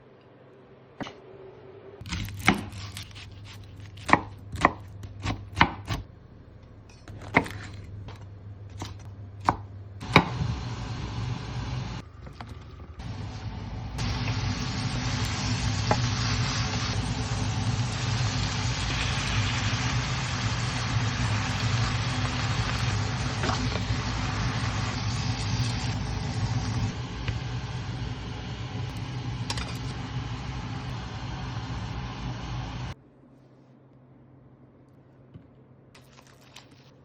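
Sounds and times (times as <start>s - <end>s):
low hum: 6.0s - 35.7s
food sizzling in frying pan: 13.0s - 33.0s.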